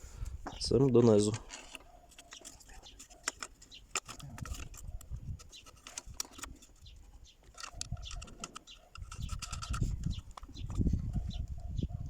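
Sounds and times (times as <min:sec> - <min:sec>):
small metal parts clicking: 0:01.2 - 0:10.8.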